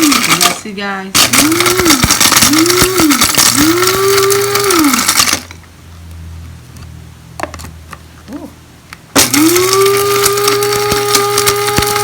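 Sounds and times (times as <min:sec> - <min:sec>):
electric grinder motor: 0:00.0 - 0:00.6, 0:01.2 - 0:05.5, 0:09.2 - 0:12.0
dry pieces rattling in a cup: 0:01.2 - 0:05.5.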